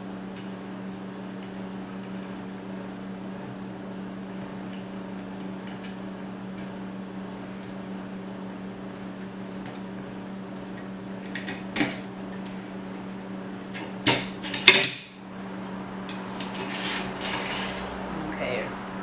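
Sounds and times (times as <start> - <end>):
steady low hum: 0.0 - 19.0
metal hardware clinking on aluminium: 13.7 - 15.2, 16.1 - 18.0.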